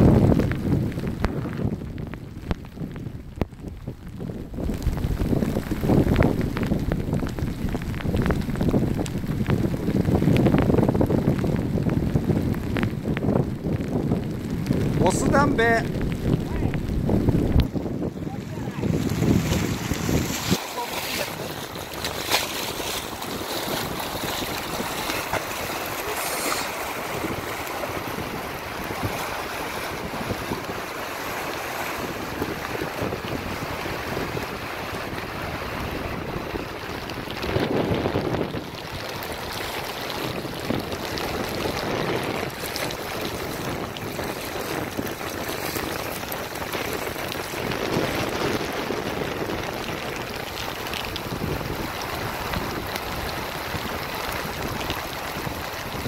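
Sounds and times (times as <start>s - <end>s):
wind buffeting microphone: 0.0s - 56.0s
river water rushing: 14.8s - 56.0s.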